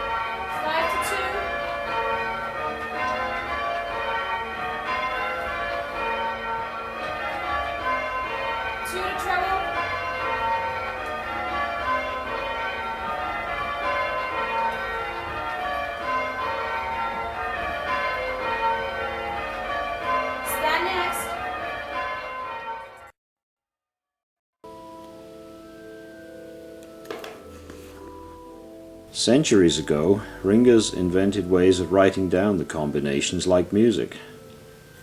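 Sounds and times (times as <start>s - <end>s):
church bells ringing: 0.0s - 23.1s, 24.6s - 35.0s.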